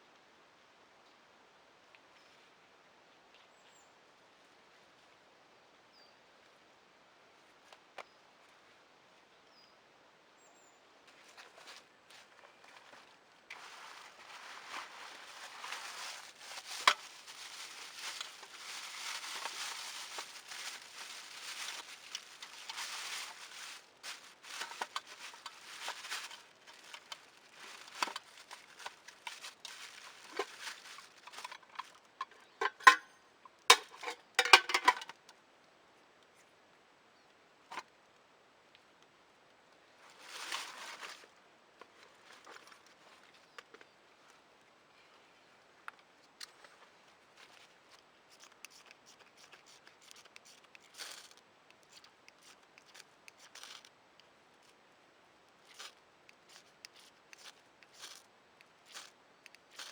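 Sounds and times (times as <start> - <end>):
rustling and crinkling: 11.1 - 33.0, 40.0 - 44.4, 45.8 - 54.8, 55.5 - 59.9.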